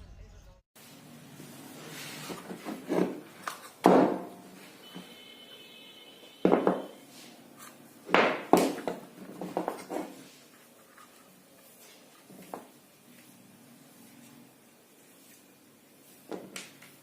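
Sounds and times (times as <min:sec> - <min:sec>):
objects knocking and thudding: 0:02.2 - 0:05.2, 0:06.4 - 0:07.0, 0:08.0 - 0:10.3, 0:16.2 - 0:16.8
faint high steady tone: 0:04.6 - 0:07.2.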